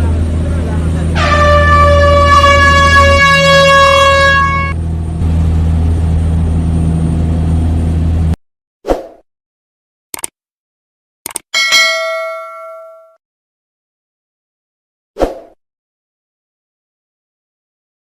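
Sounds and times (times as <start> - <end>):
low engine drone: 0.0 - 8.4
ship's horn long blast: 0.1 - 5.8.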